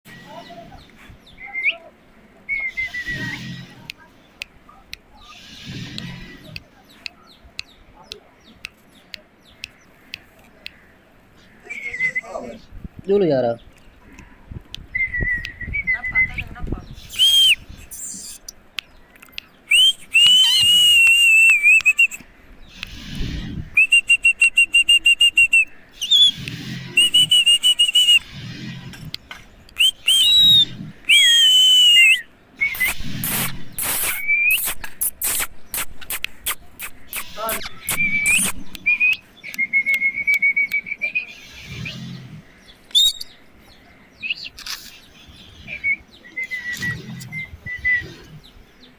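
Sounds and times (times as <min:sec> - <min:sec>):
sharp clicks: 0:17.0 - 0:28.3, 0:28.9 - 0:40.9
parakeet whistling: 0:19.7 - 0:22.2, 0:29.8 - 0:39.2.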